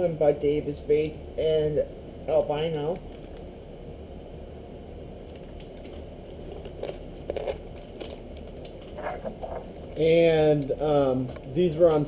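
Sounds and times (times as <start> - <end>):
low room hum: 0.0 - 12.0
plastic packaging crinkling: 5.3 - 11.6.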